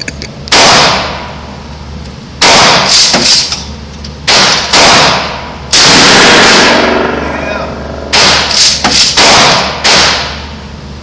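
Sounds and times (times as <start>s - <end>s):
gunshots: 0.5s - 1.3s, 2.4s - 3.5s, 4.3s - 7.2s, 8.1s - 10.5s.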